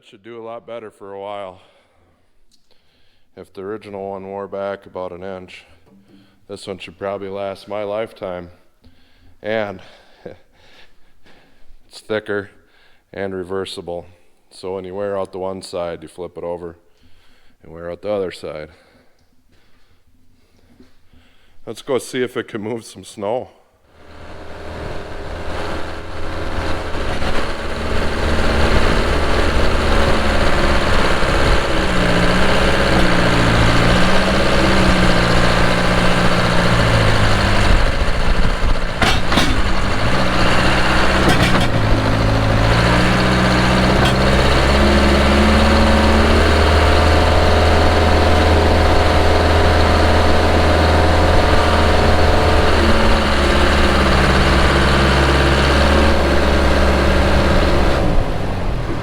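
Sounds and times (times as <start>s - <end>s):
sharp clunks: 5.8s - 6.4s, 26.0s - 45.6s
backhoe diesel engine under load: 23.9s - 59.0s
steady high whine: 24.0s - 32.0s.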